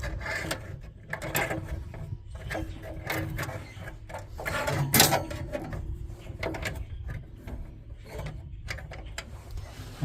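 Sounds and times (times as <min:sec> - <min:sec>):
scrape: 0:09.2 - 0:10.0.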